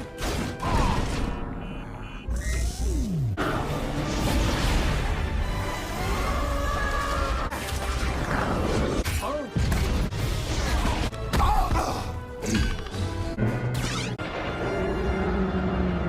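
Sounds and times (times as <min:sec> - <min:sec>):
dramatic film music: 0:00.0 - 0:16.0
crash and impact effects: 0:03.6 - 0:05.4.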